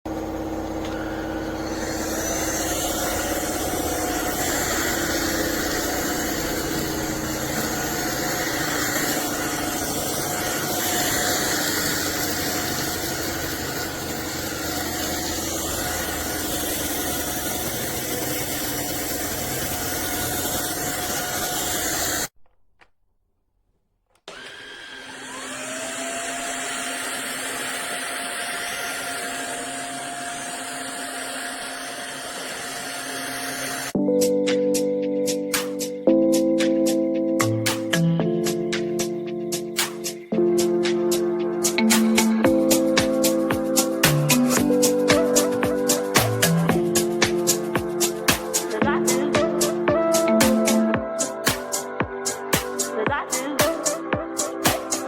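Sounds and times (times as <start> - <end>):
vacuum cleaner whining: 0.0 - 22.4, 24.2 - 55.0.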